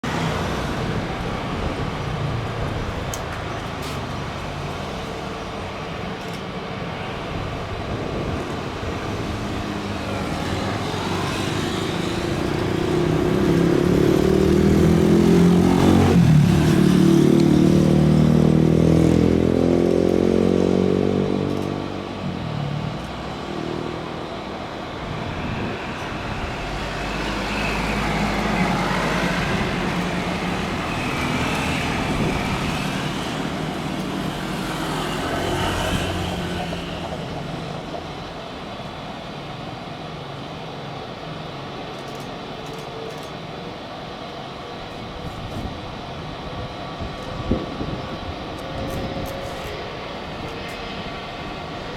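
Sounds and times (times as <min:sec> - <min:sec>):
vehicle engine passing by: 0:09.2 - 0:37.4.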